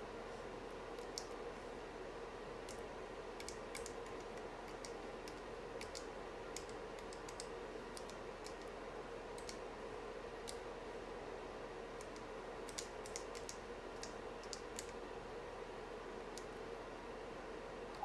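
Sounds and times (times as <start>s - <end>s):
mechanical keyboard keys clicking: 4.8s - 8.6s.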